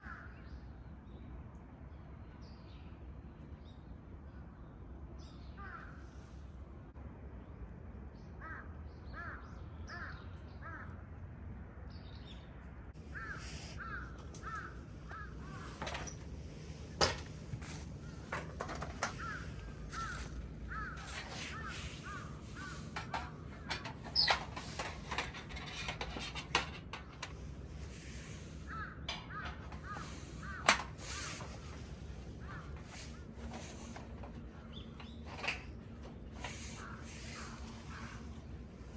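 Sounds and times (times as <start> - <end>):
crows cawing: 0.0 - 0.4, 5.6 - 6.2, 8.4 - 11.0, 13.1 - 16.2, 18.4 - 23.9, 28.3 - 34.4, 36.4 - 38.6.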